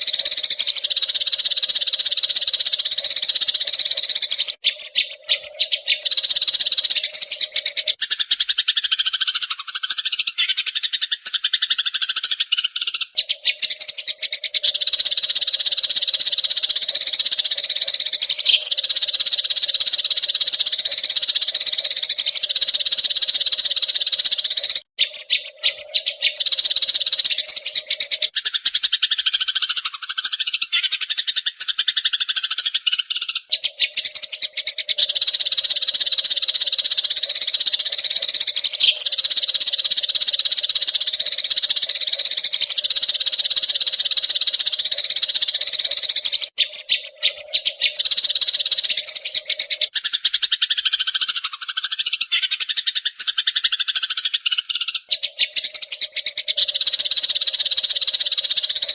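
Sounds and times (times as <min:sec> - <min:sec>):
sparrows chirping: 0:00.0 - 0:58.9.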